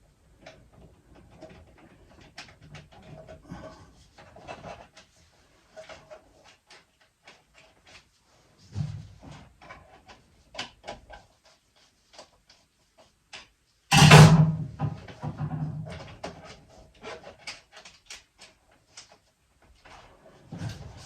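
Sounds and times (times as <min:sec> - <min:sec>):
loud ringing metal bang: 0:13.9 - 0:14.8.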